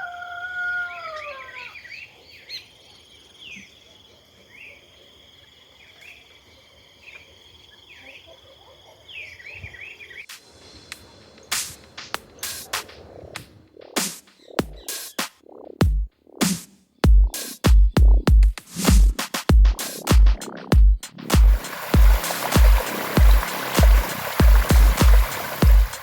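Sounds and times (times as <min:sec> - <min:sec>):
rooster crowing: 0:00.0 - 0:01.9
small birds chirping: 0:00.9 - 0:18.4, 0:19.7 - 0:26.0.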